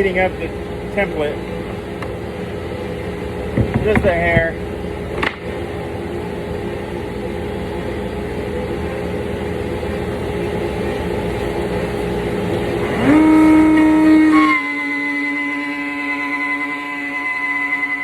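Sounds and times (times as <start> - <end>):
steady machine hum: 0.0 - 18.0.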